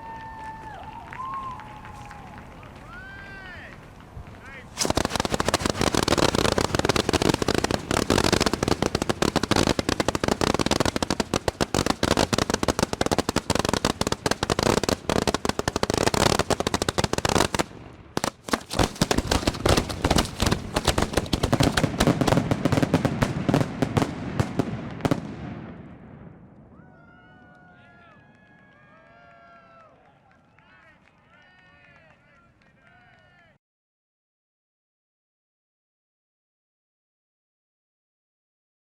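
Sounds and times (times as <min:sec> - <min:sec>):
fireworks barrage: 0:04.5 - 0:26.8.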